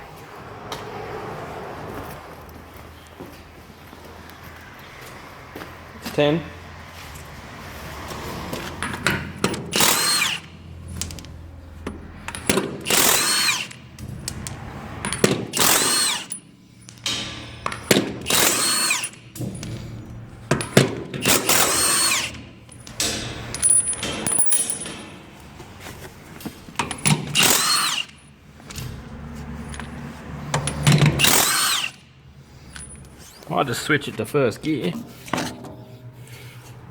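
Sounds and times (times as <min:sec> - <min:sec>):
impact wrench hammering: 0:08.8 - 0:11.2, 0:11.8 - 0:25.6, 0:26.8 - 0:28.3, 0:29.7 - 0:32.1.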